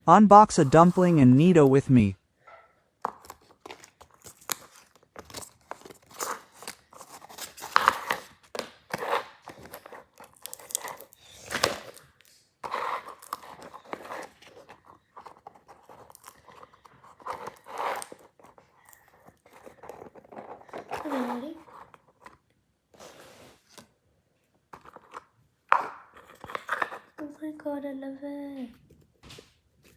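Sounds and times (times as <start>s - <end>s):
packaging being torn open: 9.5s - 12.4s.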